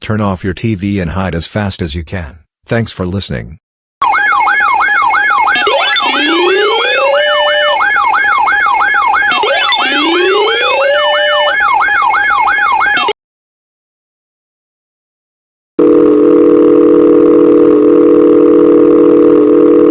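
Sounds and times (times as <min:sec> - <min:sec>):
electronic siren yelping warble: 0:04.0 - 0:13.2
rising siren sweep: 0:04.0 - 0:13.2.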